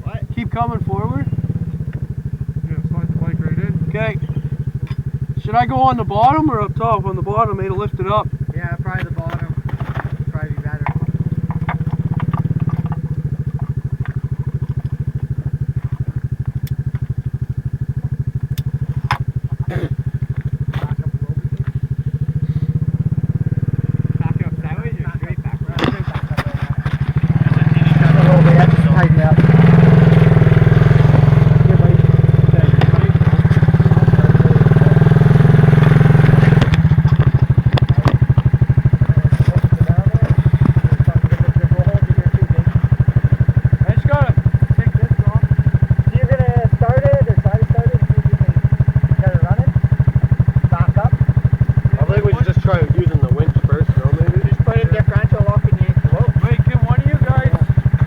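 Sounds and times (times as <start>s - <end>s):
vehicle engine idling: 0.0s - 58.0s
sharp knocks and clanks: 8.8s - 22.0s, 22.7s - 46.5s
light clanks: 24.6s - 30.9s.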